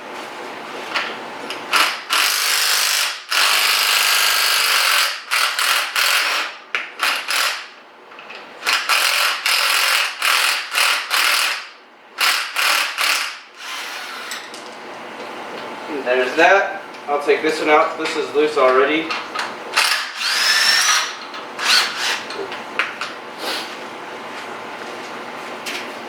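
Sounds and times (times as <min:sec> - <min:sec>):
impact wrench hammering: 0:08.6 - 0:13.5, 0:19.8 - 0:22.4.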